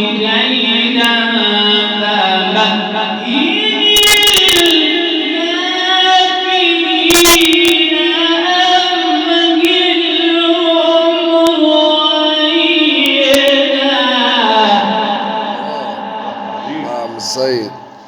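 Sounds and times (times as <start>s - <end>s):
man reciting melodically: 15.6s - 18.0s.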